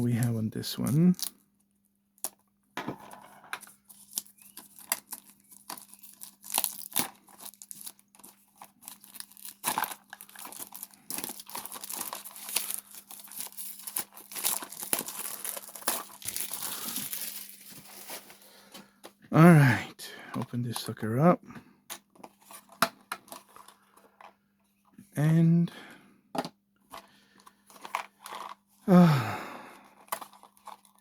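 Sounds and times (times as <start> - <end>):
packaging crinkling and tearing: 3.9 - 18.7, 29.8 - 31.0.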